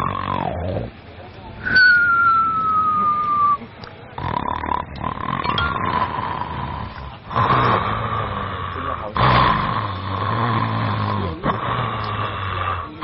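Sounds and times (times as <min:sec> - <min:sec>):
man imitating loud snoring: 0:00.0 - 0:00.9, 0:04.2 - 0:13.0
thin whistling tone sliding down: 0:01.6 - 0:03.6
steady tone: 0:05.4 - 0:07.2.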